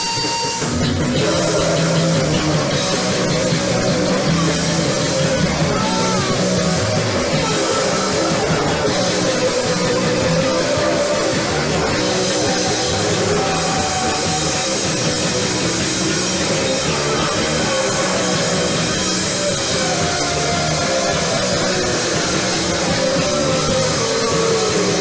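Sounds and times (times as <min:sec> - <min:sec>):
live rock band playing: 0:00.0 - 0:25.0.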